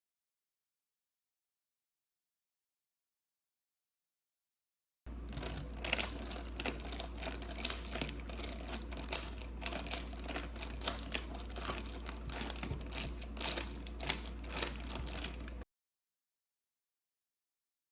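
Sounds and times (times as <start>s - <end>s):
plastic and paper crinkling: 5.1s - 15.6s
steady low hum: 5.1s - 15.6s.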